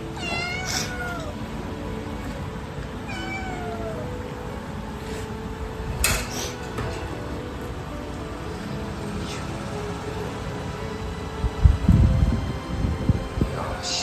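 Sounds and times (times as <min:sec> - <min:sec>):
cat meowing: 0:00.2 - 0:01.3, 0:03.1 - 0:04.0.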